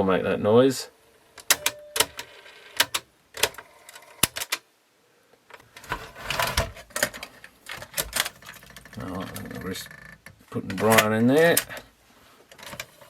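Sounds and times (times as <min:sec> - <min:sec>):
plastic rattling clatter: 0:05.7 - 0:11.9.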